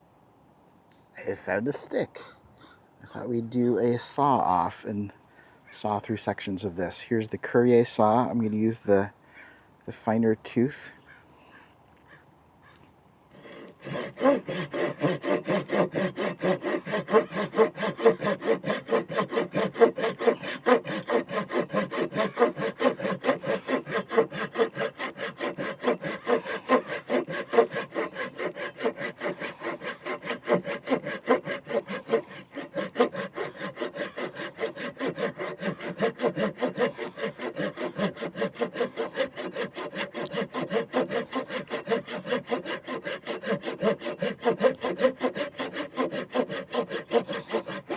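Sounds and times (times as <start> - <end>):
pull saw cutting wood: 13.3 - 47.9.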